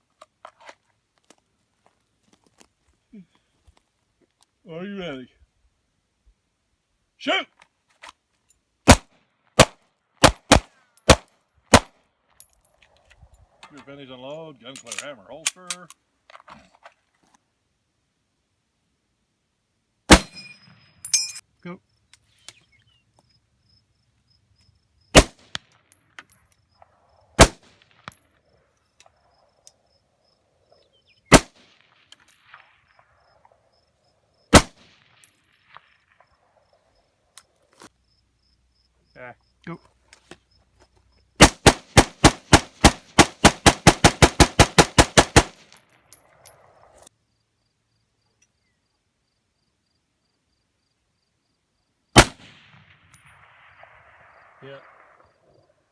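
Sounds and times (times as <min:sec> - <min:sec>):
gunshots: 0:08.9 - 0:11.9, 0:20.1 - 0:20.6, 0:25.1 - 0:25.6, 0:27.4 - 0:28.1, 0:31.3 - 0:31.8, 0:34.5 - 0:35.2, 0:41.4 - 0:45.8, 0:52.2 - 0:55.6.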